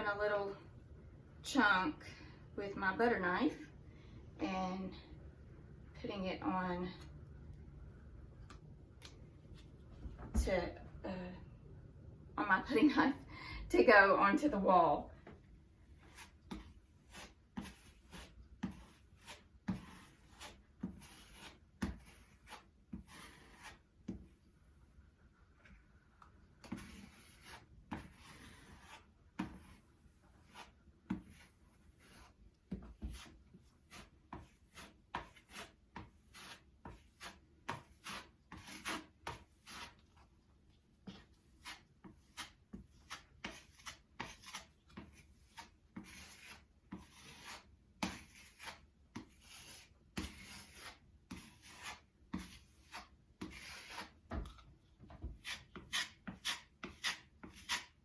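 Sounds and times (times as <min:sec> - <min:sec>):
putty knife scraping: 0:16.0 - 0:24.2, 0:26.6 - 0:40.3, 0:41.0 - 0:54.6, 0:55.2 - 0:58.0.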